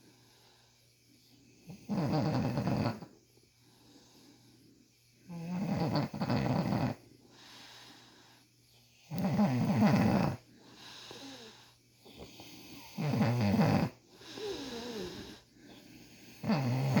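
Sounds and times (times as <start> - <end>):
man snoring: 1.9 - 3.0, 5.3 - 7.0, 9.1 - 10.4, 12.8 - 15.4, 16.2 - 17.0.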